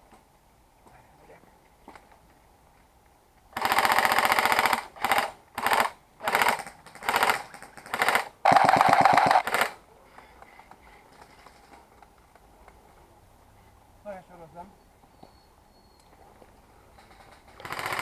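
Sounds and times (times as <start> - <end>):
airsoft gun firing bursts: 3.6 - 9.8, 17.3 - 18.0.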